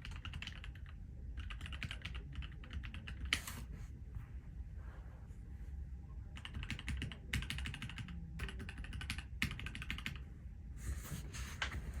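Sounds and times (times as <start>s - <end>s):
mechanical keyboard typing: 0.0s - 3.5s, 6.4s - 10.2s.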